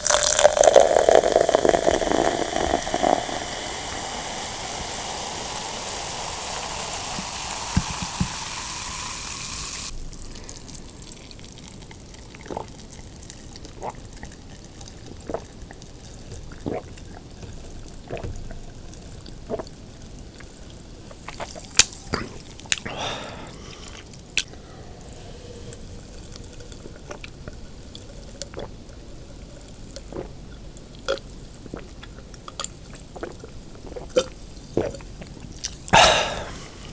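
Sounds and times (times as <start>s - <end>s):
wet mouth clicks and smacks: 21.3s - 22.9s.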